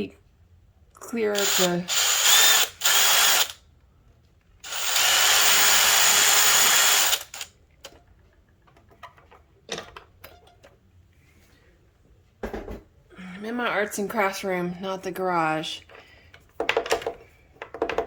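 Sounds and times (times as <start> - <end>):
electric drill whining: 1.4 - 3.6, 4.6 - 7.5.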